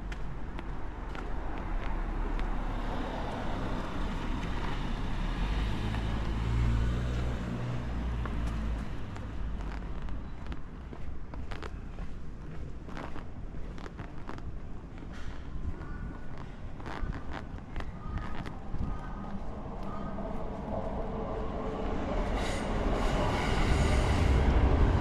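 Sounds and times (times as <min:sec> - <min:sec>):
vehicle passing by: 0:01.8 - 0:09.8, 0:18.3 - 0:25.0.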